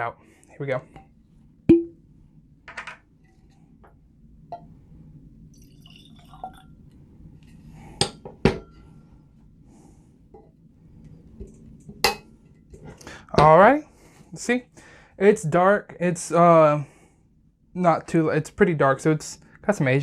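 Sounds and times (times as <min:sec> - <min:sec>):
liquid pouring into a glass: 0:05.5 - 0:06.9.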